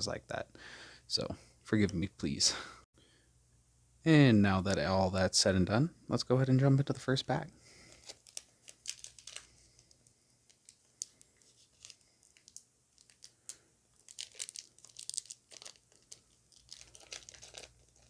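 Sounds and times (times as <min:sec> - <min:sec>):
foil wrapper tearing and crinkling: 0:07.9 - 0:18.0.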